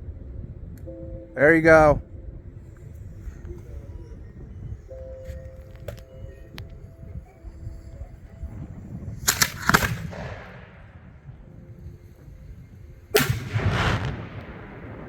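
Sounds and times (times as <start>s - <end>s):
firework mortar launch report: 8.9s - 15.0s
rumbling echo: 9.1s - 15.0s
firework shell bursting bang: 13.2s - 15.0s.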